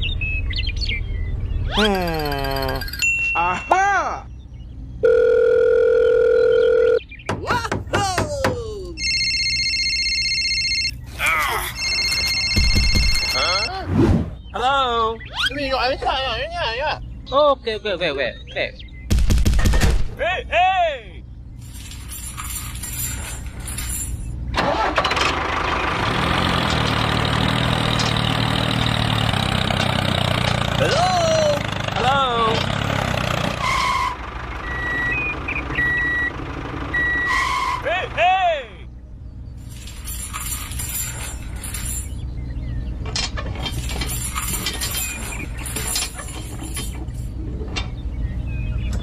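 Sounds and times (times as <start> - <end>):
engine idling with low hum: 0.0 - 13.7, 14.4 - 26.1, 27.1 - 49.0
dense clinking and rattling: 21.6 - 24.9, 39.6 - 42.3, 43.0 - 47.4
engine starting: 24.5 - 28.2.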